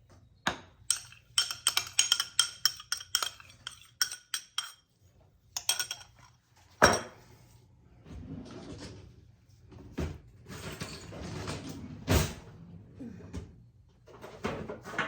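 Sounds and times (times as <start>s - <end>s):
metal utensil clinking on dish: 0.9s - 4.8s, 5.6s - 7.1s.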